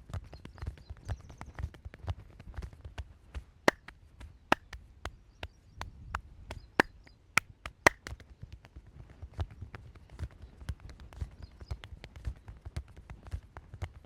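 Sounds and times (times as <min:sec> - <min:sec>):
hand chops and slaps: 0:03.7 - 0:03.9, 0:04.5 - 0:04.8.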